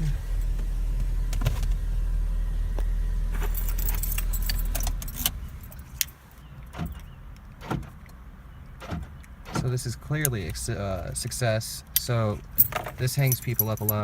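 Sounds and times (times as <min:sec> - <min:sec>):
steady low hum: 0:00.0 - 0:06.1
car keys jangling: 0:03.3 - 0:06.2, 0:11.9 - 0:14.0.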